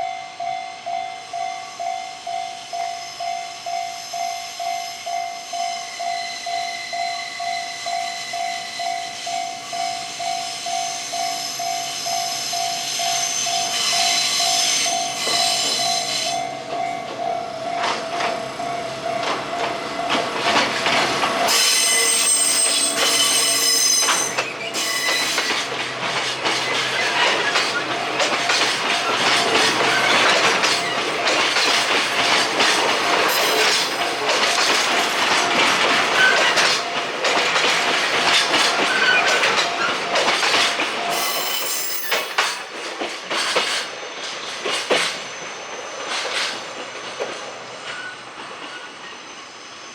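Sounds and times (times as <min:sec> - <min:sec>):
level-crossing warning bell: 0:00.0 - 0:42.8
high squeal: 0:03.0 - 0:17.0, 0:20.9 - 0:25.7, 0:41.1 - 0:42.4, 0:47.7 - 0:49.9
train wheels clattering: 0:06.0 - 0:49.2.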